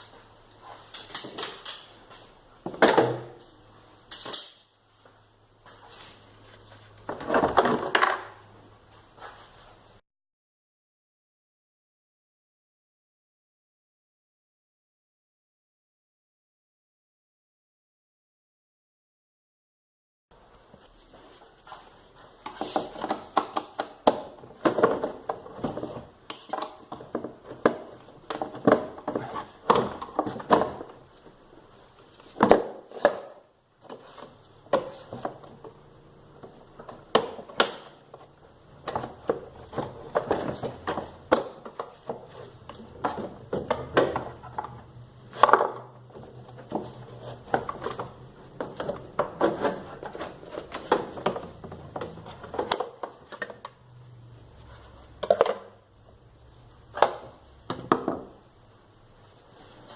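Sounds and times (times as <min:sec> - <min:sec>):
hand tools and metal clanking: 0:00.0 - 0:05.0.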